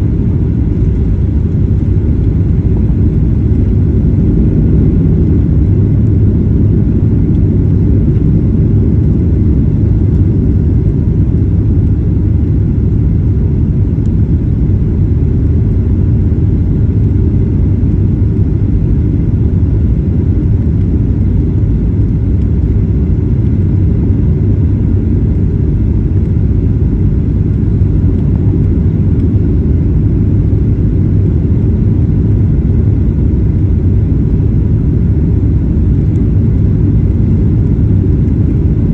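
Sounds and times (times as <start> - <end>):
airliner engine rumble: 0.0 - 38.9.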